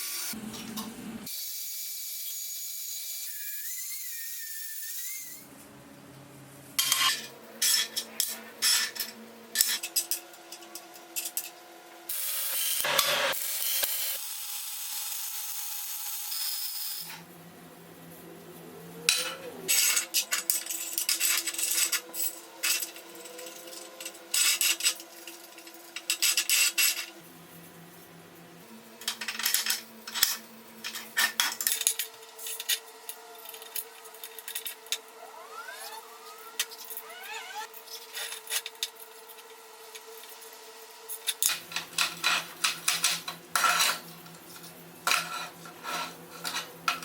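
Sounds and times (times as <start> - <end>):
metal parts scraping and clattering: 6.8 - 11.6, 19.0 - 27.2, 29.0 - 39.4, 41.1 - 47.0.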